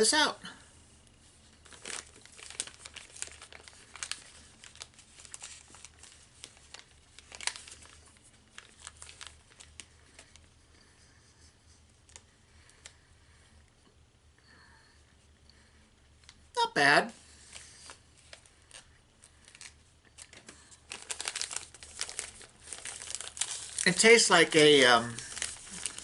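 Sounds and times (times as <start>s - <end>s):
plastic wrapper crinkling: 1.5s - 10.5s, 12.0s - 13.0s, 17.2s - 26.0s.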